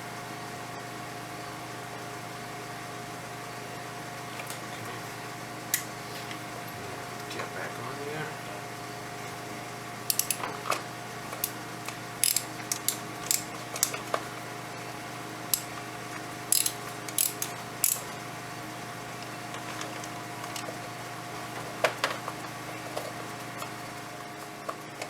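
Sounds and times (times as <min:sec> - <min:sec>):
steady background hum: 0:00.0 - 0:25.0
plastic filter parts clicking: 0:10.1 - 0:11.6, 0:12.2 - 0:14.2, 0:16.5 - 0:18.0.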